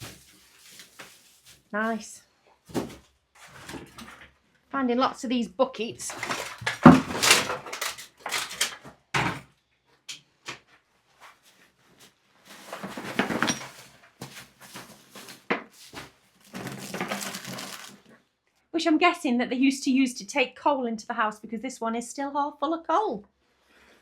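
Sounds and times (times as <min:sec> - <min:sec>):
metal buckets clattering and scraping: 0:00.0 - 0:02.0, 0:02.7 - 0:04.3, 0:05.9 - 0:09.4, 0:12.5 - 0:18.2.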